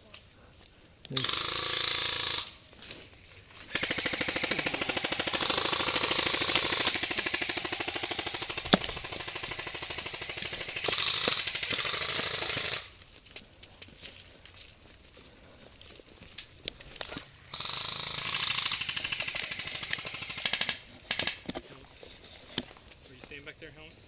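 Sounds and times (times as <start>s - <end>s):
airsoft gun firing full auto: 1.2s - 2.5s, 3.7s - 12.9s, 17.5s - 21.4s.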